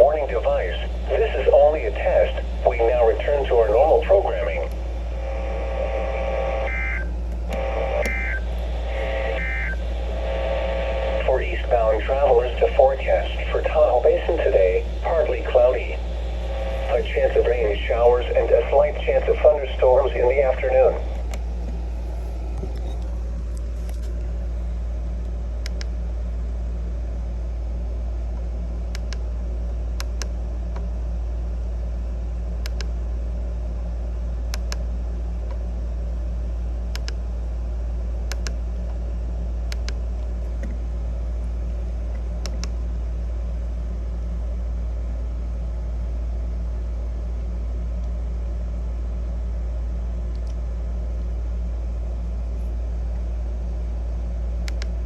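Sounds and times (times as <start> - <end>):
steady low hum: 0.0 - 55.0
sharp clicks: 25.6 - 25.9, 28.9 - 29.2, 32.7 - 32.9, 34.6 - 34.8, 36.9 - 37.2, 38.3 - 38.6, 39.7 - 40.0, 42.4 - 42.8, 54.6 - 55.0.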